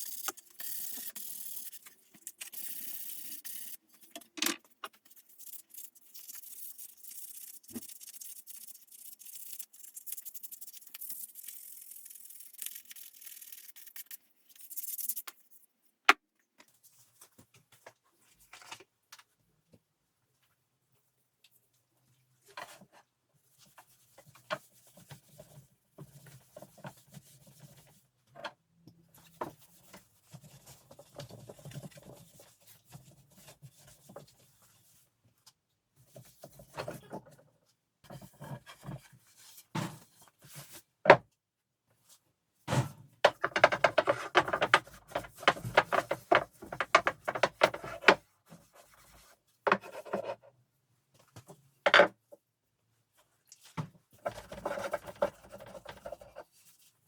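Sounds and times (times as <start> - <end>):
rubbing and scraping on wood: 43.4 - 50.5.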